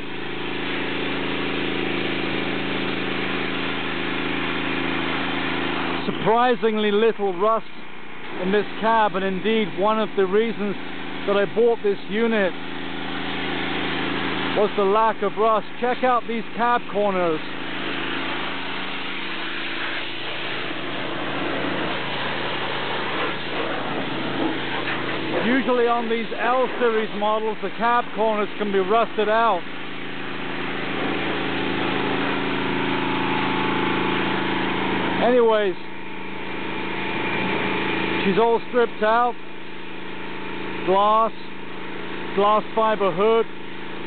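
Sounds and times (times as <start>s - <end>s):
engine idling: 0.0s - 44.0s
low motor hum: 0.0s - 44.0s
pressure washer hissing: 0.0s - 44.0s.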